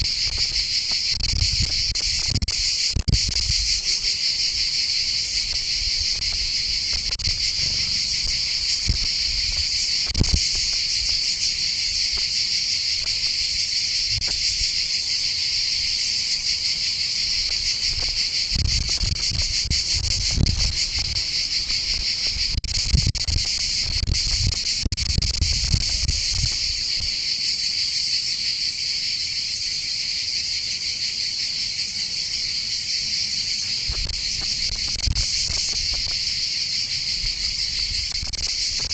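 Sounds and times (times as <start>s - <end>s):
insects chirping: 0.0s - 38.9s
low thumps and rumbles: 5.4s - 11.5s, 17.5s - 26.8s.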